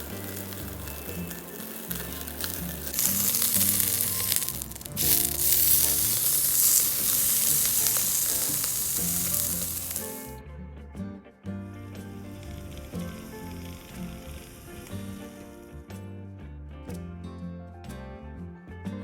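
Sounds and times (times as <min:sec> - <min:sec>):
meat sizzling on a grill: 0:00.0 - 0:10.4, 0:12.1 - 0:15.7
background music: 0:00.0 - 0:19.0.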